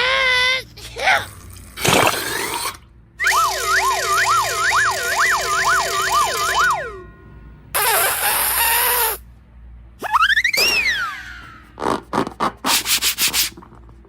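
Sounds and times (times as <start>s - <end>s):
siren wailing: 3.2s - 7.2s
short noisy burst: 7.7s - 9.3s.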